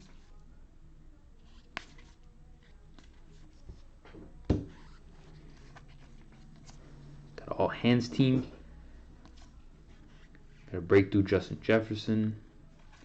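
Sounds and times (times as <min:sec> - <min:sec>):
faint card rustles: 0:01.4 - 0:04.1, 0:04.7 - 0:10.8, 0:12.7 - 0:13.0.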